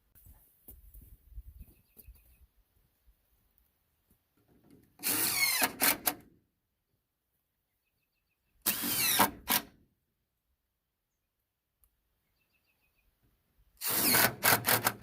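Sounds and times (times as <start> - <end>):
power drill whirring: 5.0 - 6.2, 8.7 - 9.7, 13.8 - 15.0.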